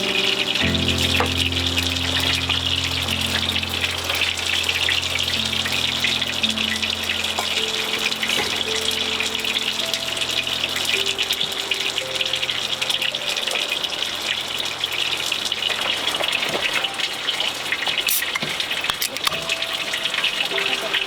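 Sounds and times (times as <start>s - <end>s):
soft background music: 0.0s - 18.0s, 19.2s - 21.0s
water heating hiss: 0.0s - 21.0s.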